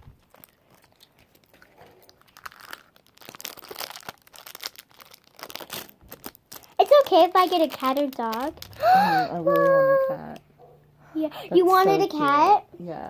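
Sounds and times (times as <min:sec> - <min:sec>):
plastic wrapping crinkling and tearing: 0:00.0 - 0:10.4.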